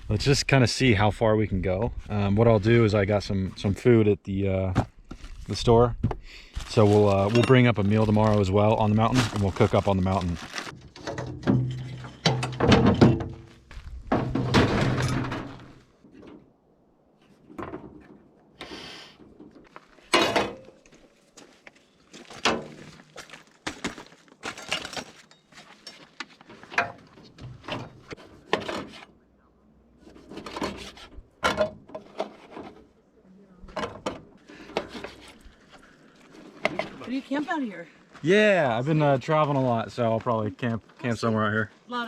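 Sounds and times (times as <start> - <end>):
camping gear clattering: 6.5 - 16.5, 17.2 - 29.2, 33.7 - 37.7.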